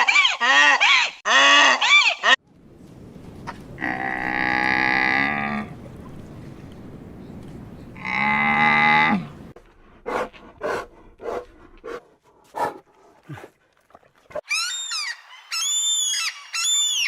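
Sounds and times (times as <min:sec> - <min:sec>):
cow mooing: 0:03.8 - 0:05.8, 0:08.0 - 0:09.5.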